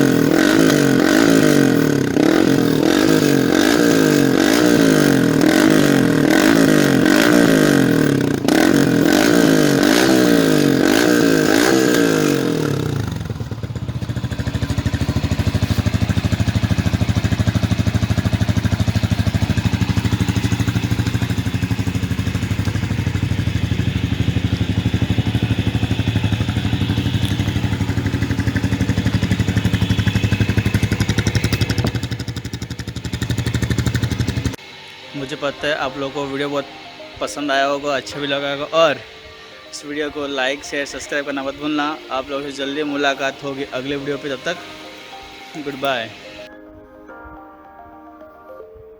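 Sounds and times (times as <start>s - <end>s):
motorcycle engine revving and idling: 0.0s - 36.6s.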